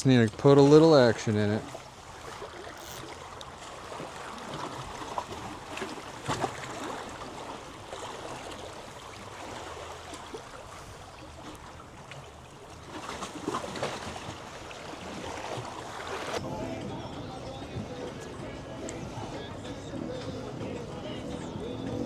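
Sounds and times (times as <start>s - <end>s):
seawater washing around rocks: 0.0s - 22.0s.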